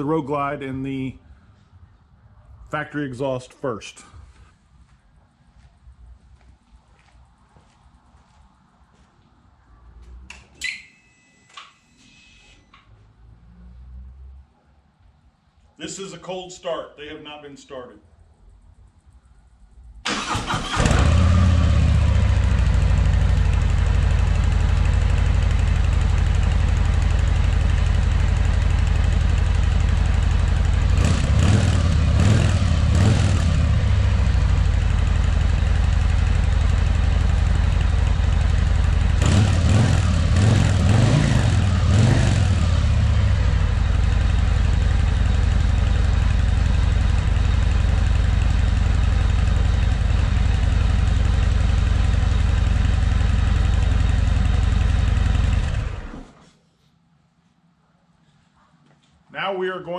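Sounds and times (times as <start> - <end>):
motorcycle starter turning: 20.1 - 21.3
motorcycle engine idling and revving: 20.1 - 56.4.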